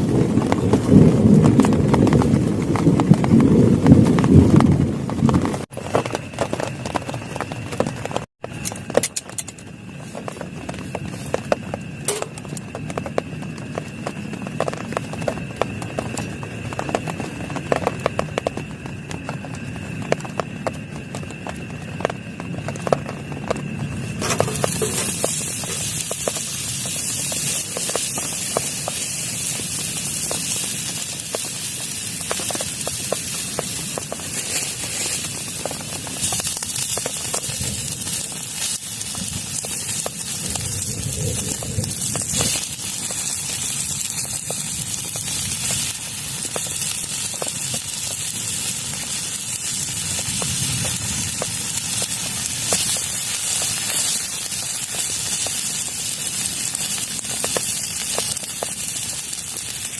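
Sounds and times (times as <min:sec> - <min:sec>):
heavy rain on plastic tarp: 0:00.0 - 0:59.9.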